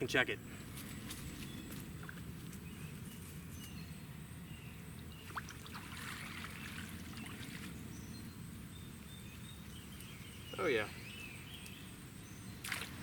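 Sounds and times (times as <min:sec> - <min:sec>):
trickling water: 0:05.0 - 0:07.9.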